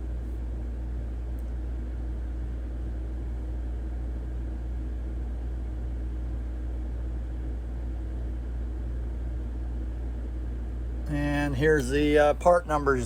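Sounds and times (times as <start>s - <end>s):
diesel engine idling: 11.1s - 13.0s.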